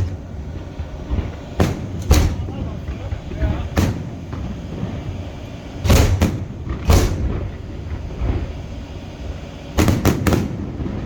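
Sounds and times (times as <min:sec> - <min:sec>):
fireworks bursting: 0:00.0 - 0:11.0
low rumble: 0:00.0 - 0:11.0.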